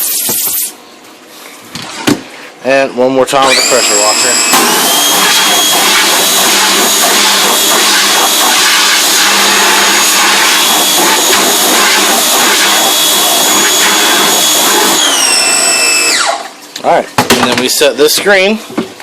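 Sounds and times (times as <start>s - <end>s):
pressure washer spraying: 0.0s - 0.8s, 3.4s - 16.4s
motor whine falling in pitch: 3.4s - 16.4s.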